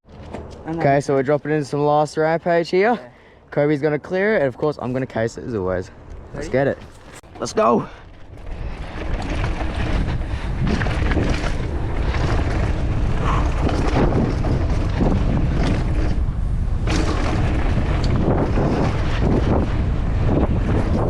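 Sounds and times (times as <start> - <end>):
wind buffeting microphone: 5.3 - 21.0
tyres rumbling over dirt: 6.2 - 21.0
bike knocks and rattles: 6.7 - 21.0.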